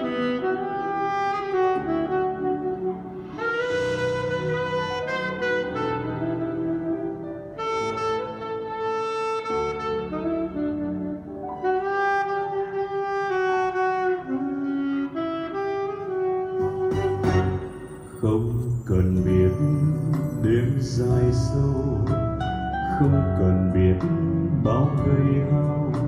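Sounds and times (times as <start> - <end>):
saxophone melody: 0.0 - 26.0
soft sustained accompaniment: 16.7 - 23.1.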